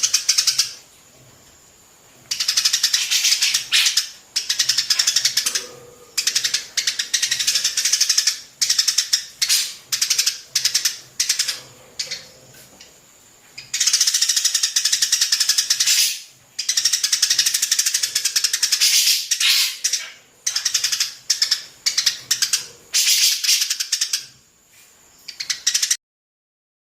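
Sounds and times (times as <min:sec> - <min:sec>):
sparrows chattering: 0:02.3 - 0:13.0, 0:13.6 - 0:24.4.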